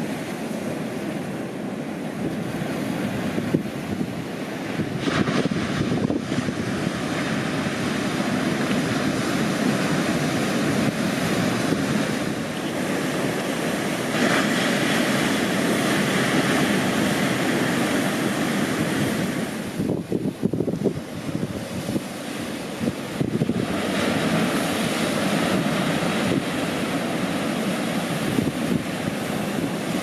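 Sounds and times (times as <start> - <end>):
small waves breaking: 0.0 - 30.0
wind on microphone: 2.1 - 30.0.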